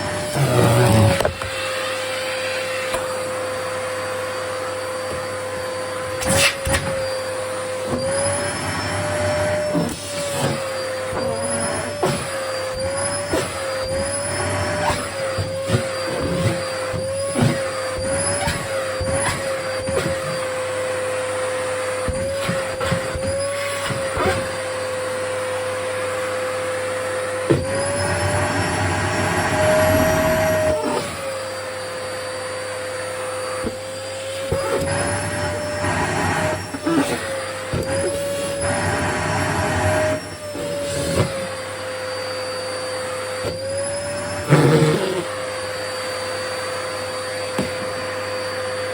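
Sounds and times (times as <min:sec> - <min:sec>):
vacuum cleaner motor whining: 0:00.0 - 0:48.9.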